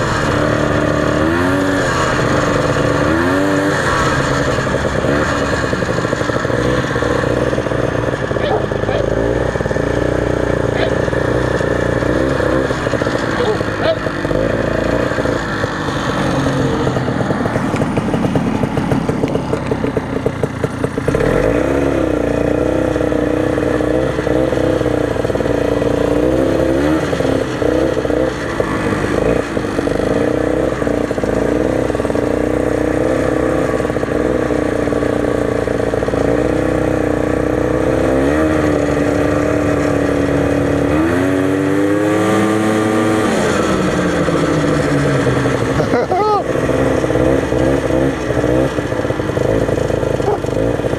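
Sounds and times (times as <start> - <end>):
snowmobile engine running: 0.0 - 50.9.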